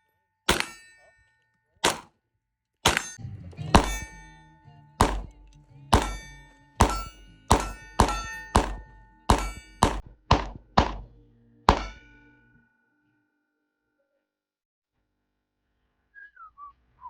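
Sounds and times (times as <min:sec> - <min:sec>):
gunshots ringing steel targets: 0:00.5 - 0:02.1, 0:02.8 - 0:12.4.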